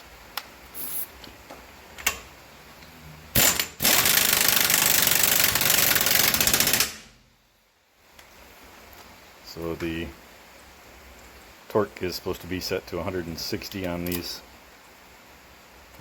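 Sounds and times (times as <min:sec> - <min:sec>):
impact wrench hammering: 0:03.4 - 0:07.1.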